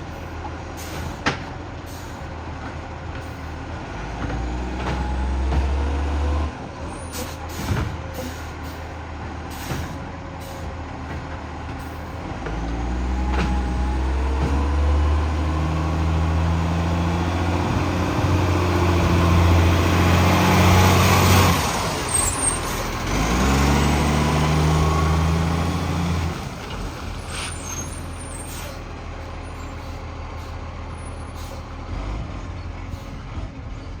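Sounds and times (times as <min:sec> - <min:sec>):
truck engine revving: 0:03.7 - 0:08.0, 0:11.5 - 0:29.9, 0:30.8 - 0:34.0.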